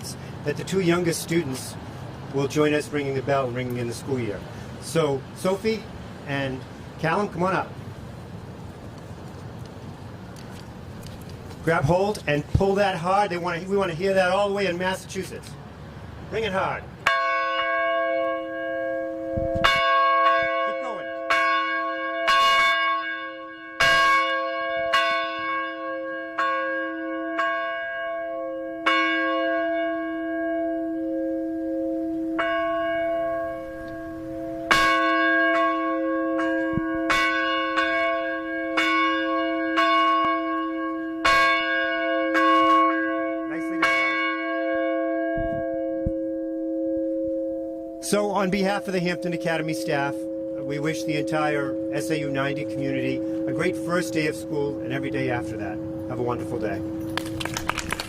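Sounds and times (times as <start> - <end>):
tower bell ringing: 16.6 - 57.4.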